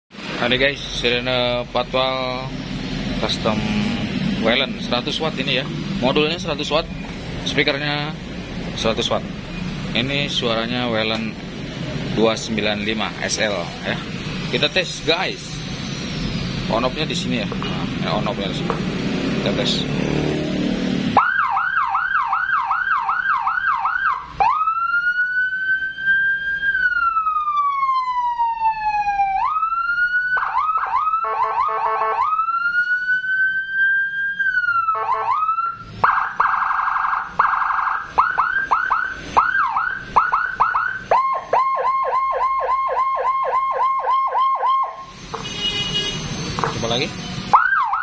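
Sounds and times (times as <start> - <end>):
electronic police siren: 21.1 - 45.4, 46.3 - 48.0.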